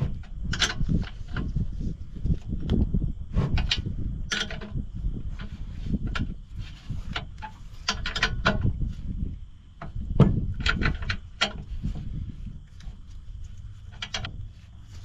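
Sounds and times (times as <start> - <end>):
hand tools and metal clinking: 0.5 - 1.7, 3.6 - 9.2, 9.8 - 15.0.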